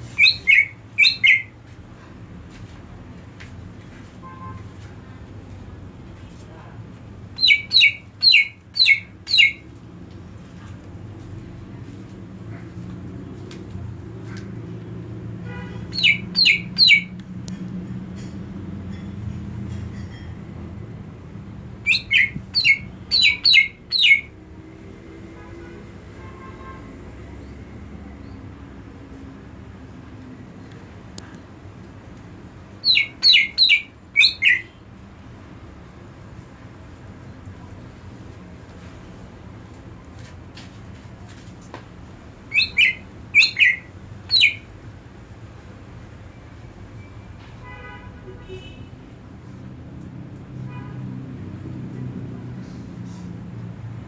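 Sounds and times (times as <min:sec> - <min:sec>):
bird chirping sharply: 0:00.1 - 0:01.5, 0:07.4 - 0:09.6, 0:15.9 - 0:17.1, 0:21.8 - 0:24.3, 0:32.8 - 0:34.8, 0:42.5 - 0:44.7.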